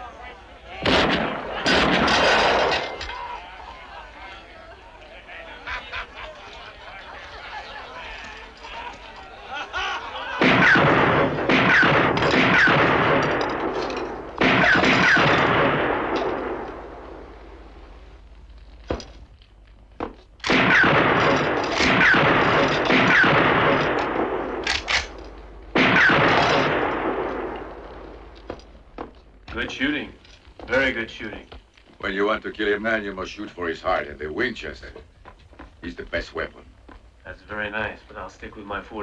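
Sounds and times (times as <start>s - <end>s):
rifle shots echoing: 0.8s - 3.1s, 10.4s - 17.8s, 20.4s - 28.5s.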